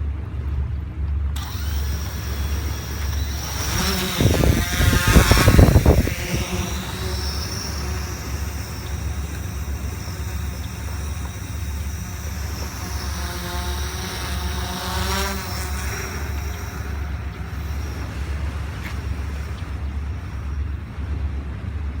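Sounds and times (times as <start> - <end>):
wind buffeting microphone: 1.4 - 13.2
motor passing by: 1.4 - 21.3.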